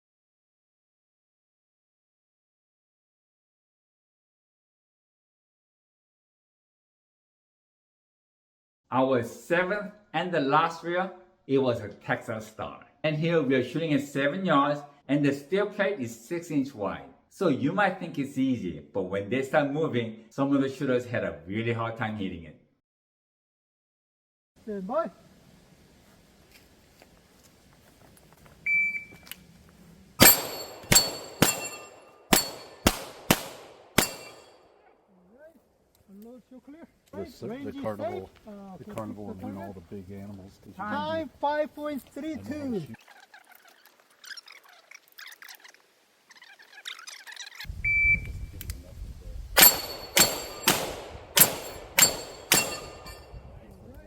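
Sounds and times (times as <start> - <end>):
steel plates ringing: 30.2 - 33.0, 34.0 - 34.6, 49.6 - 53.3
gunshots: 30.2 - 34.6, 49.6 - 53.3.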